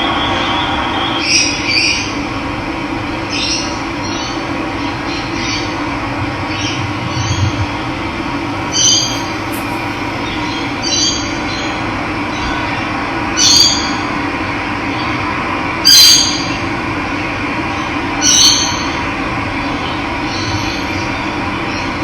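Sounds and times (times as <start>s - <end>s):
bird short high call: 8.6s - 11.0s.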